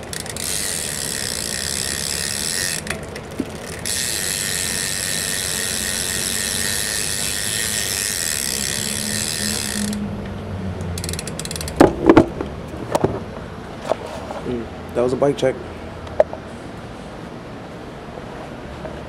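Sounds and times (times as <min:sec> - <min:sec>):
bicycle hub freewheel clicking: 0:00.0 - 0:12.1.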